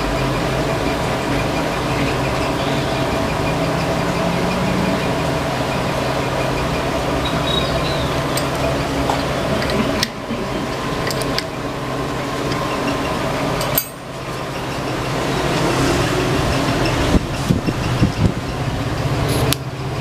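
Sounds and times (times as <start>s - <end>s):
machine hum: 0.0s - 20.0s
sharp clicks and knocks: 8.3s - 11.6s, 12.4s - 15.1s.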